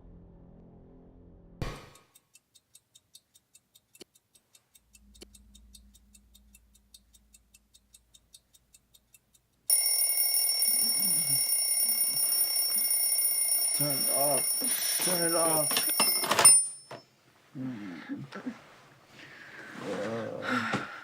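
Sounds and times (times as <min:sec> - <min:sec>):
clock ticking: 0:01.7 - 0:17.0
electronic alarm clock ringing: 0:09.7 - 0:17.1.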